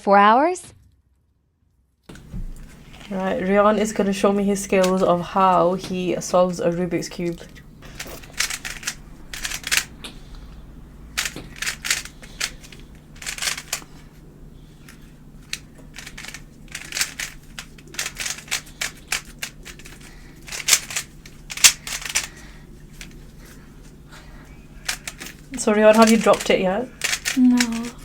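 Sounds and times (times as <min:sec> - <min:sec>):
puzzle cube layers clicking: 0:08.0 - 0:10.0, 0:11.2 - 0:13.8, 0:15.5 - 0:22.3, 0:25.9 - 0:28.0.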